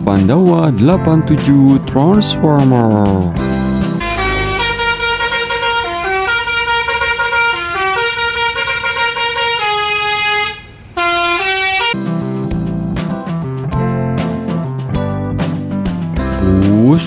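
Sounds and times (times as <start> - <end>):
strummed guitar music: 0.0 - 5.7, 12.0 - 17.0
bus horn playing a tune: 3.9 - 12.0.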